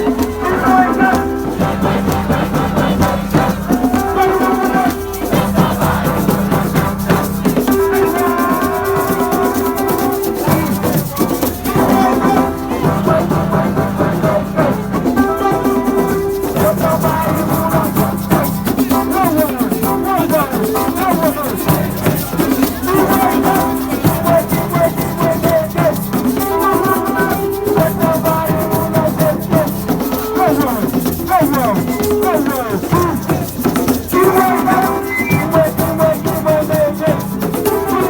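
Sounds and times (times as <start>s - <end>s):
shaker rattling: 0.0s - 13.2s, 15.0s - 38.0s
drum beat: 0.0s - 38.0s
sliding melody notes: 34.8s - 35.6s.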